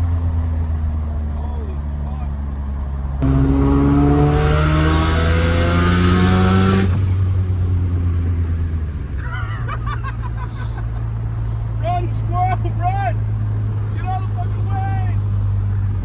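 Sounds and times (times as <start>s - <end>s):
car engine revving: 3.2s - 14.4s.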